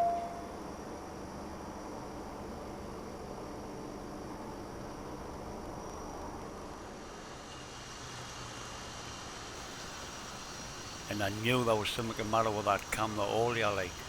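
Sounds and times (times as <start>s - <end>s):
background hiss: 9.6s - 14.0s.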